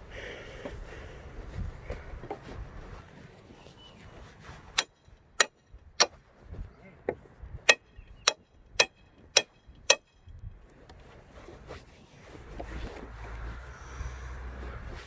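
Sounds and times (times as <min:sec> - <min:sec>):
hammer striking with ringing: 0:04.8 - 0:06.1, 0:07.7 - 0:10.2.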